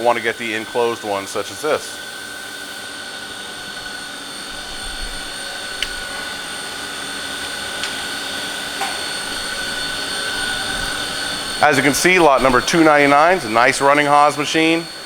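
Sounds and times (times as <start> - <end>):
milling machine spindle whine: 0.0 - 15.0.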